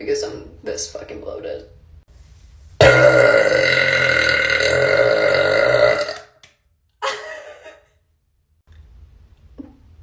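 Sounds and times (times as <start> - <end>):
woman burping: 2.8 - 6.3.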